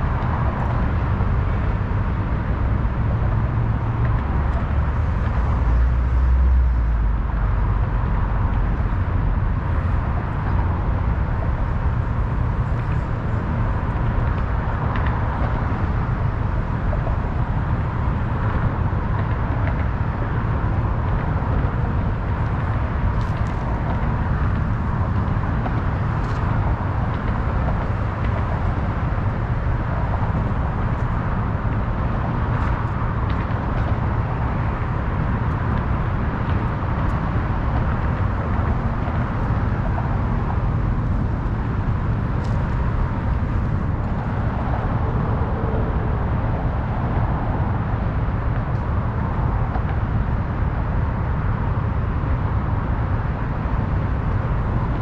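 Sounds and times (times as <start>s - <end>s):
city road traffic drone: 0.0s - 55.0s.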